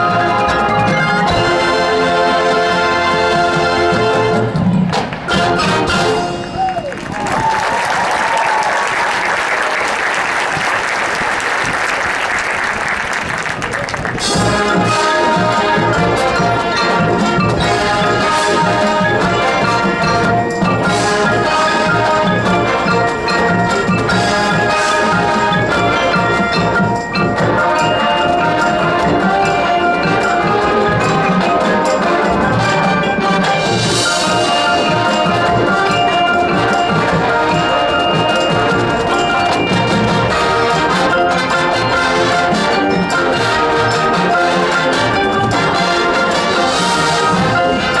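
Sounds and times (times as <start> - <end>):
marching band playing: 0.0 - 48.0
applause: 6.4 - 14.2.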